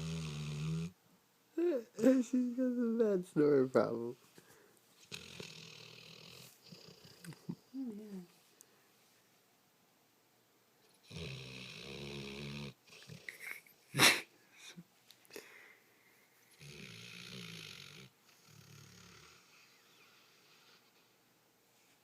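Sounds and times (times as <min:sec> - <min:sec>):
dog snoring: 0:00.0 - 0:01.0, 0:05.0 - 0:08.2, 0:10.9 - 0:13.4, 0:16.5 - 0:21.0.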